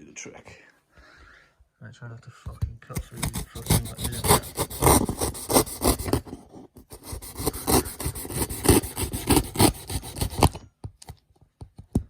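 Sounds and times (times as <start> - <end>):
knife sawing through cardboard box: 3.0 - 10.6.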